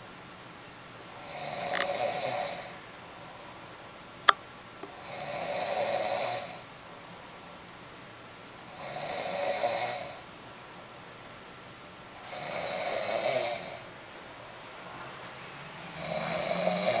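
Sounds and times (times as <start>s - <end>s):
person snoring: 1.2s - 2.8s, 5.0s - 6.7s, 8.7s - 10.2s, 12.2s - 13.9s, 15.8s - 17.0s.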